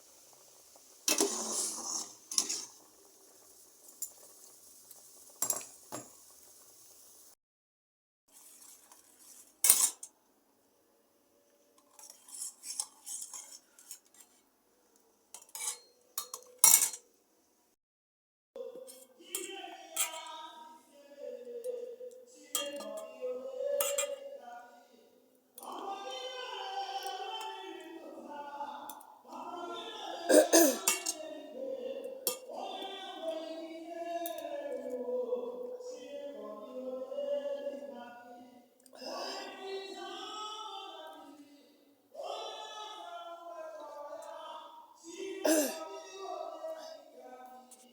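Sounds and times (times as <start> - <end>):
people singing: 1.1 - 2.8, 18.6 - 47.9
cutlery clinking and scraping: 1.1 - 3.0, 5.4 - 6.2, 8.3 - 10.1, 11.8 - 14.4, 15.4 - 17.1, 18.8 - 20.4, 22.6 - 23.2, 23.8 - 24.2, 30.7 - 31.2.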